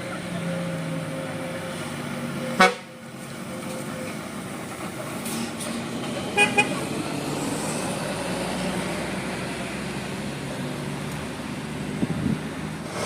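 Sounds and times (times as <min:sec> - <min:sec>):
traffic engine and road noise: 0:00.0 - 0:13.0
bus horn toots: 0:02.4 - 0:04.2, 0:06.3 - 0:06.8.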